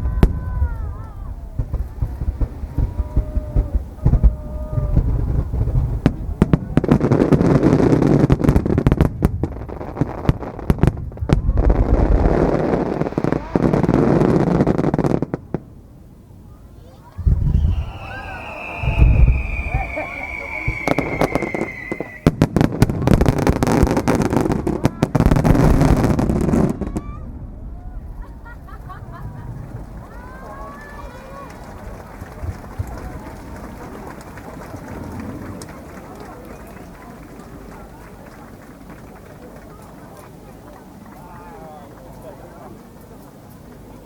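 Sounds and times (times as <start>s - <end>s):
fireworks bursts and crackling: 0.0s - 15.7s, 17.2s - 27.2s, 28.0s - 41.1s
whistling firework shell: 17.2s - 22.5s.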